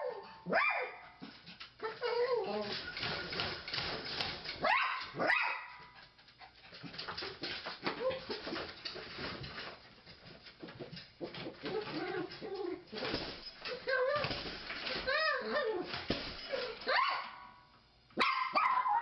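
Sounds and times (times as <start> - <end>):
dog whining and yelping: 1.8 - 3.3, 13.7 - 17.4.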